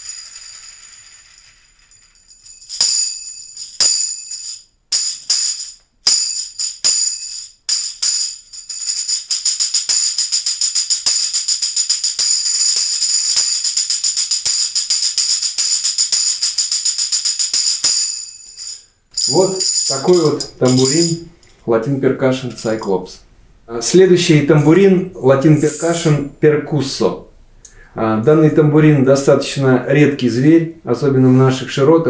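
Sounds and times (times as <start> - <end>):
tambourine jingling: 0.0 - 21.8, 22.4 - 23.0, 24.2 - 26.3.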